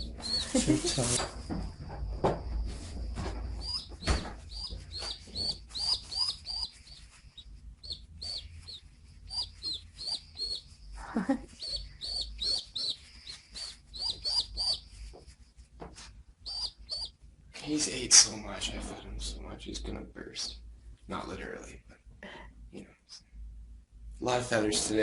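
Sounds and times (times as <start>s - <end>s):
pigeon squab peeping: 0.0s - 1.6s, 2.6s - 15.3s, 16.0s - 17.2s.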